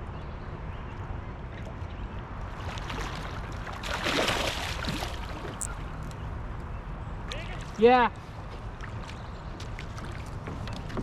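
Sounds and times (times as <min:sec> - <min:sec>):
water splashing against kayak: 0:02.5 - 0:05.8.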